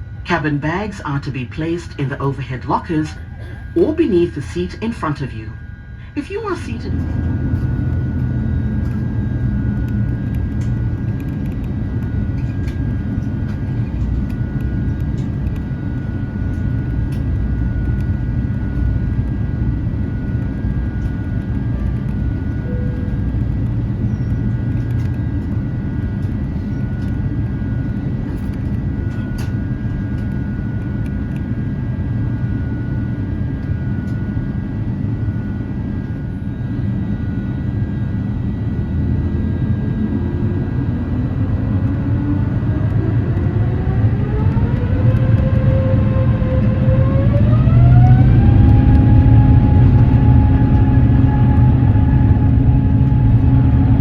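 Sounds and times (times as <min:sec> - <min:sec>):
aircraft cabin rumble: 0:00.0 - 0:54.0
jet engine spooling up: 0:03.7 - 0:54.0.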